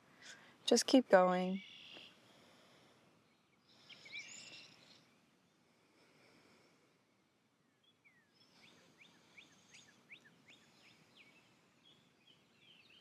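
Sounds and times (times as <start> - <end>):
bird chirping: 1.6 - 2.2, 3.2 - 5.6, 7.6 - 13.0.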